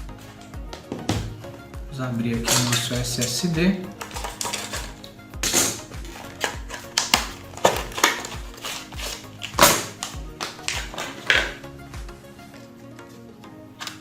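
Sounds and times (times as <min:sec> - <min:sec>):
background music with steady beat: 0:00.0 - 0:14.0
plastic packaging crackling: 0:02.5 - 0:11.6.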